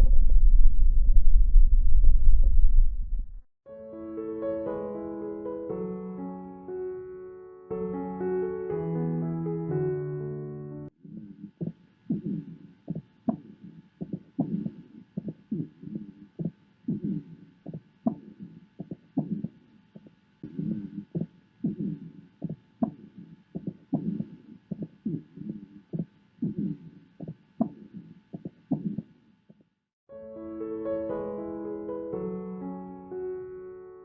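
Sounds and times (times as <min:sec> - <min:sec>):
breath sounds: 0:11.0 - 0:29.2
heartbeats through stethoscope: 0:11.2 - 0:29.2.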